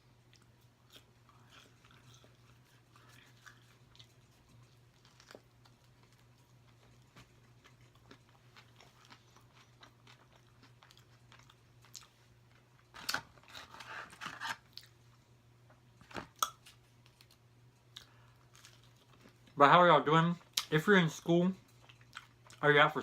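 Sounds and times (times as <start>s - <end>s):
person chewing food: 0.1s - 13.5s, 16.1s - 19.6s, 21.6s - 22.6s
crunching food: 0.2s - 15.1s, 16.0s - 19.6s, 21.6s - 22.9s.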